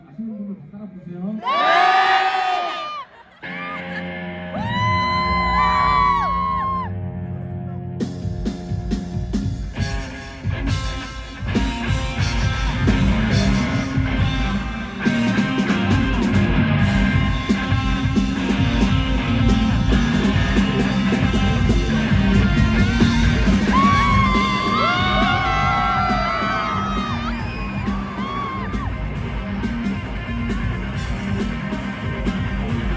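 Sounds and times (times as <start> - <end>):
live rock band playing: 8.0 - 32.9.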